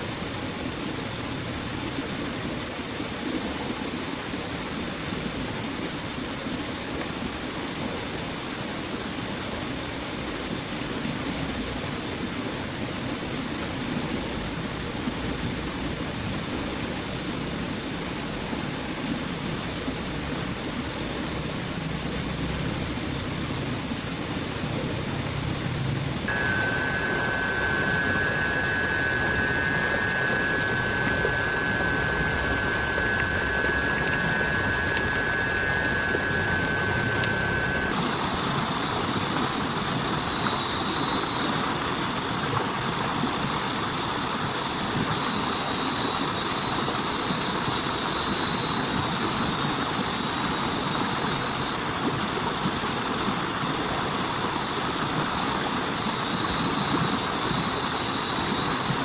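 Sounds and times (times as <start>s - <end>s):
insects trilling: 0.0s - 59.0s
low steady insect tone: 0.0s - 59.0s
rain hiss: 13.9s - 59.0s.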